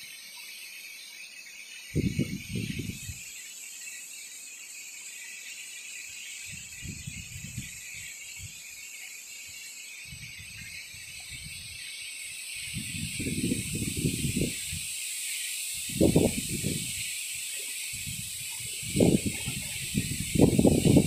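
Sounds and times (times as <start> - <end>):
wind buffeting the microphone: 1.9 - 3.2, 6.5 - 8.6, 10.1 - 11.8, 12.5 - 15.0, 15.6 - 21.0
gusty wind rushing: 2.0 - 3.2, 12.6 - 15.0, 15.7 - 21.0.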